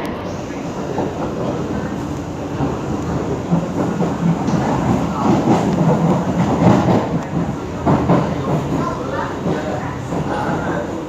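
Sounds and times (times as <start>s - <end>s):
train rolling rumble: 0.0s - 11.0s.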